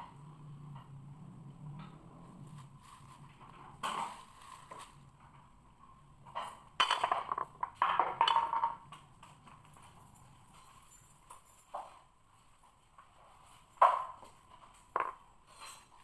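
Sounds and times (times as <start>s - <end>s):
knocks and clinks of hard objects: 2.9s - 5.5s, 6.2s - 12.1s, 13.4s - 16.0s.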